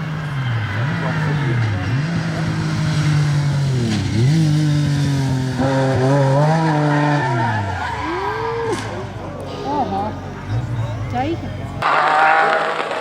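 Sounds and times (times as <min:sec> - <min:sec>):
tyres squealing: 0:00.0 - 0:04.4
rally car engine revving hard: 0:00.0 - 0:09.2, 0:11.8 - 0:13.0.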